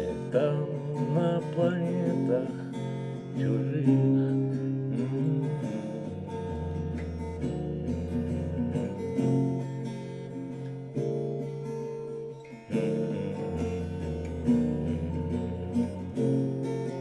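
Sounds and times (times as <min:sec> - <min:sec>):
person singing: 0:00.0 - 0:09.1, 0:12.7 - 0:16.3
guitar strumming chords: 0:00.0 - 0:17.0.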